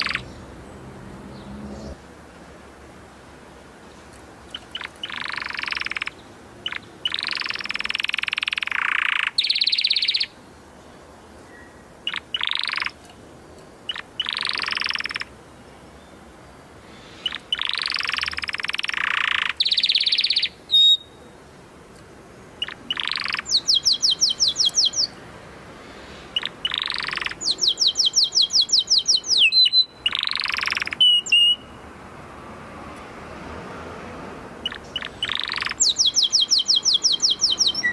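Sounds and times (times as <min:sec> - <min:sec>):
canary singing: 0:00.0 - 0:02.0, 0:04.5 - 0:10.4, 0:11.5 - 0:13.0, 0:13.9 - 0:15.4, 0:17.0 - 0:21.3, 0:22.6 - 0:25.2, 0:25.8 - 0:31.8, 0:34.6 - 0:37.9.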